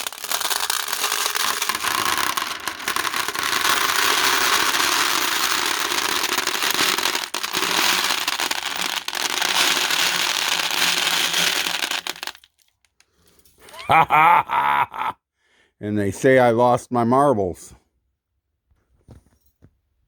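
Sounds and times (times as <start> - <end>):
glass marbles rattling in a tin: 0.0 - 12.7.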